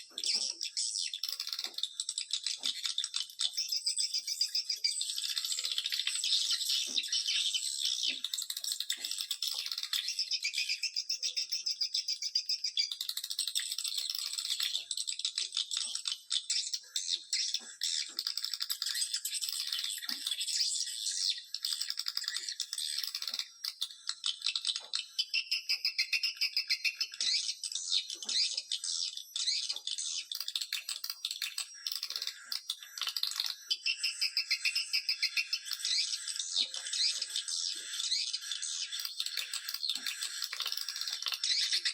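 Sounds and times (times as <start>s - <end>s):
swiftlet twitters and clicks: 29.9s - 41.9s.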